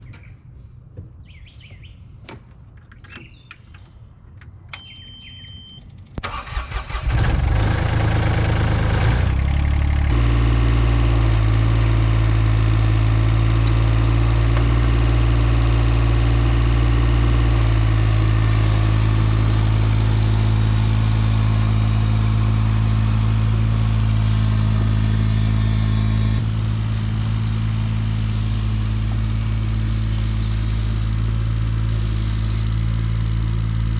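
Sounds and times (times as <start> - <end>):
birds chirping: 0.0 - 6.2
excavator engine cranking and idling: 2.2 - 33.9.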